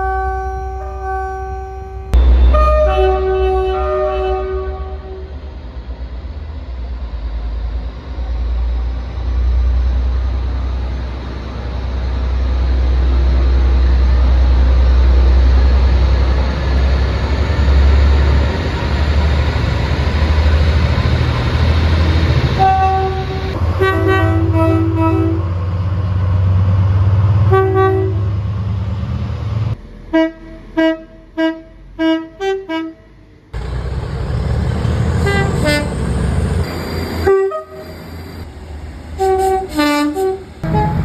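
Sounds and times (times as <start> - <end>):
train horn: 0.0 - 5.4, 22.6 - 25.5, 27.4 - 28.4, 30.1 - 33.1, 35.2 - 36.0, 37.2 - 37.9, 39.2 - 41.0
low rumble of passing train: 0.0 - 41.0.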